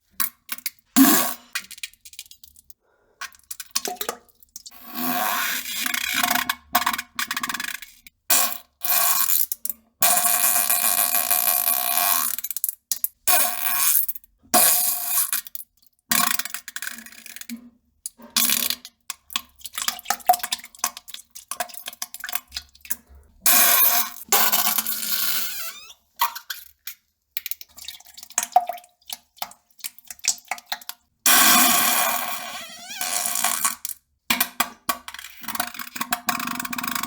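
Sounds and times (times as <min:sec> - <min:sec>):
fart sounds: 0:25.2 - 0:26.0, 0:32.1 - 0:33.7.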